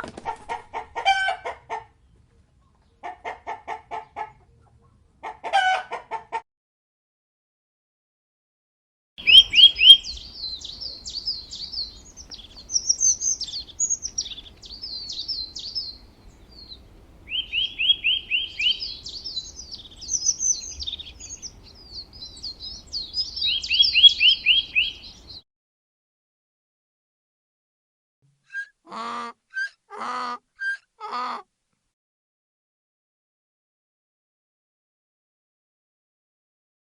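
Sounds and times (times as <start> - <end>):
songbird singing: 9.2 - 25.4.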